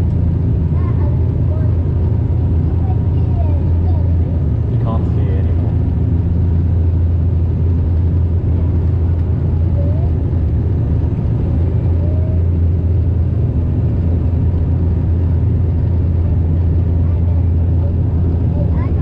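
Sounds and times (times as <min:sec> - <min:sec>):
turboprop engine drone in cabin: 0:00.0 - 0:19.0.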